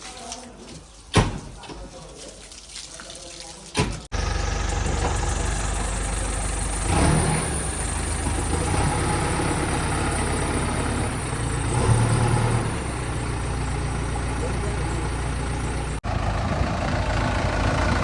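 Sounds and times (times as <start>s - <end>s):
heavy diesel engine running: 4.1s - 18.0s.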